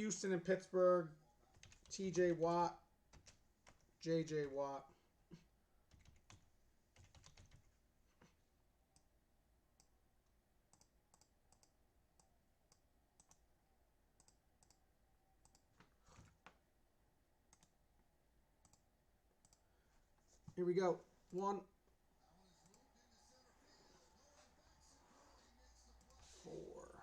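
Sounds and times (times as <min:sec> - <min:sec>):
computer mouse clicks: 0:10.7 - 0:13.4, 0:14.2 - 0:14.8, 0:15.4 - 0:16.6, 0:17.5 - 0:17.8, 0:18.6 - 0:19.7.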